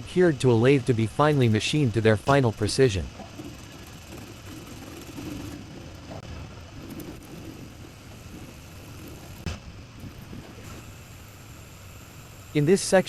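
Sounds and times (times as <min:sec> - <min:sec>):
workshop machinery humming: 0:00.0 - 0:13.0.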